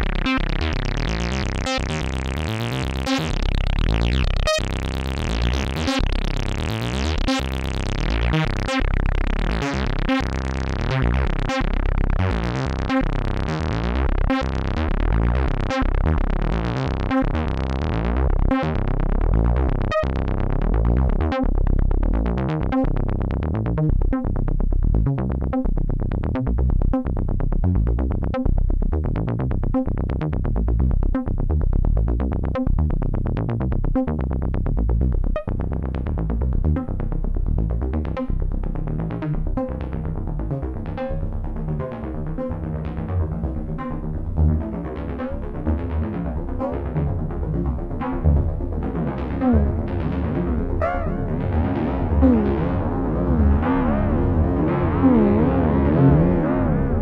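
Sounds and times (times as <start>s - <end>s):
synthesizer repeating short notes: 39.1s - 57.0s.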